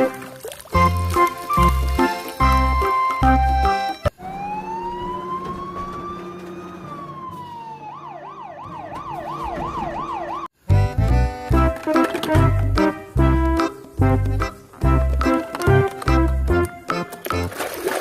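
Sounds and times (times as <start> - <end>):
children's music: 0.0 - 4.1, 10.7 - 17.7
wailing warbling siren: 4.1 - 10.5.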